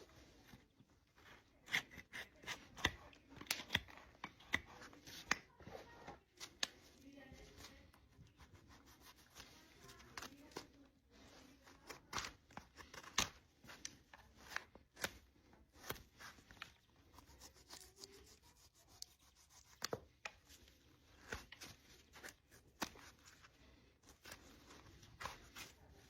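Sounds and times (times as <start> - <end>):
hoof knife cutting and scraping: 1.2 - 5.5, 11.7 - 20.4.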